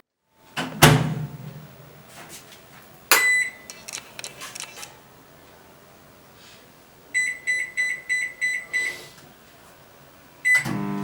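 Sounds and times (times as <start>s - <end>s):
microwave hum: 4.4s - 11.0s.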